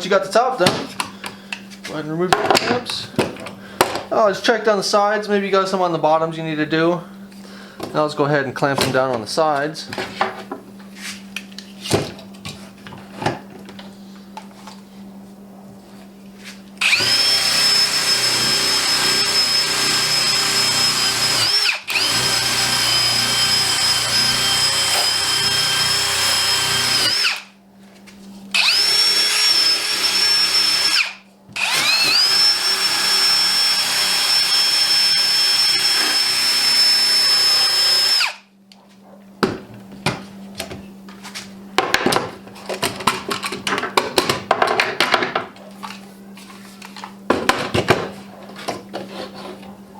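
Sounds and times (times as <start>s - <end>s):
drill wire wheel whining on steel: 16.8s - 27.5s, 28.5s - 38.5s.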